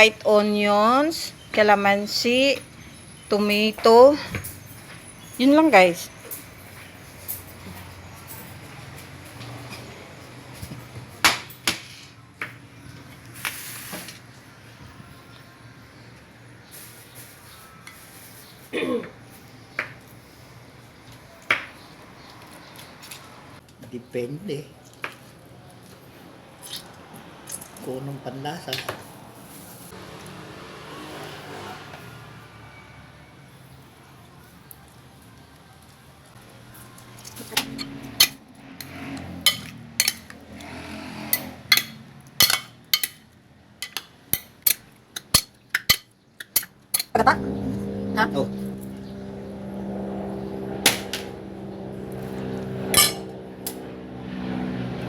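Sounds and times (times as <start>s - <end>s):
utensils and dishes clinking: 37.3s - 38.4s, 39.5s - 40.4s, 41.3s - 43.2s, 53.0s - 53.3s
sharp clinks: 52.9s - 53.3s
kitchen utensils and dishes knocking: 53.0s - 53.3s.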